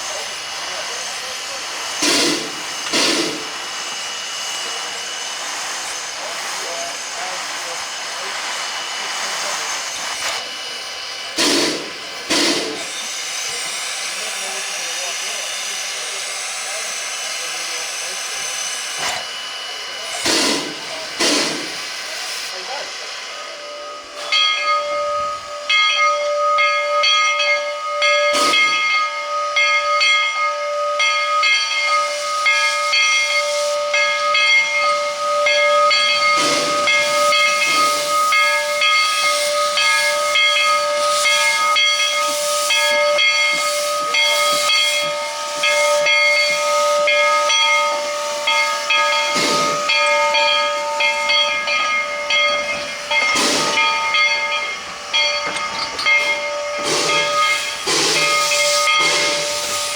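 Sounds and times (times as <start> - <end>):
steam hissing: 0.0 - 59.9
air pump beating: 20.2 - 21.8, 52.7 - 59.9
gusts of steam: 32.0 - 59.9.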